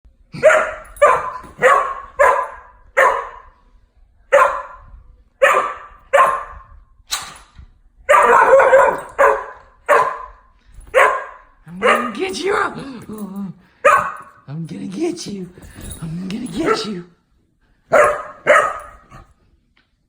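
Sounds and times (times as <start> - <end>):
puppy barking: 0.4 - 3.5, 4.3 - 6.7, 8.1 - 12.7, 13.8 - 14.4, 16.5 - 17.0, 17.9 - 19.3.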